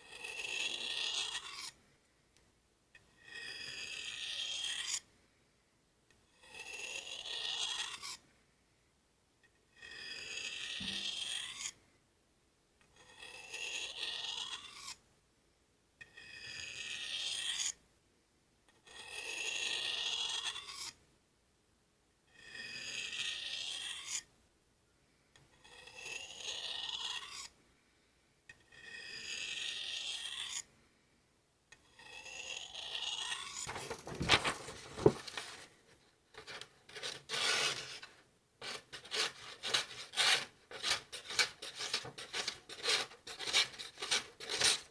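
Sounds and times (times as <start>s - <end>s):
knife scraping on sharpening steel: 25.6s - 27.5s, 36.4s - 44.9s.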